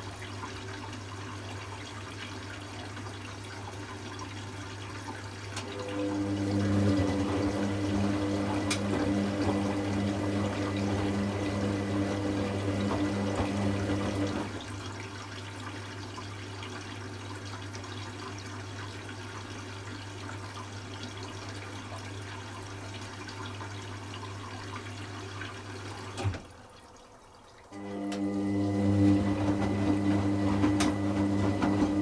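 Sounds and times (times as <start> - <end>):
water running into washing machine: 0.0 - 32.0
washing machine drum motor: 5.5 - 14.7, 27.7 - 32.0.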